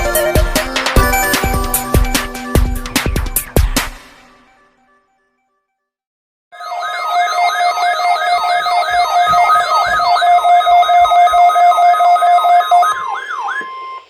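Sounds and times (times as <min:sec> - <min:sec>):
steady electronic tones: 0:00.0 - 0:04.5, 0:06.6 - 0:14.0
weather radio warning alarm: 0:06.6 - 0:14.0.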